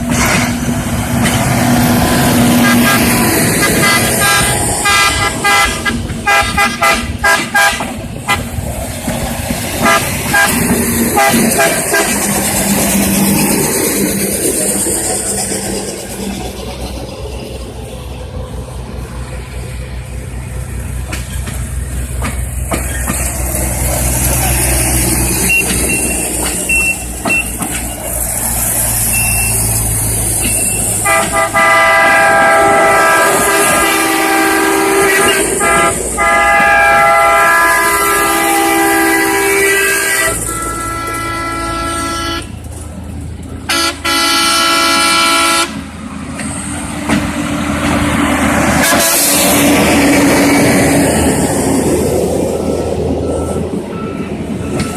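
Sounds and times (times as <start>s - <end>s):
horn blasts: 0.0s - 8.6s, 9.8s - 12.4s, 30.4s - 42.6s, 43.7s - 45.8s, 48.8s - 49.5s
rail equipment rumbling: 0.0s - 54.9s.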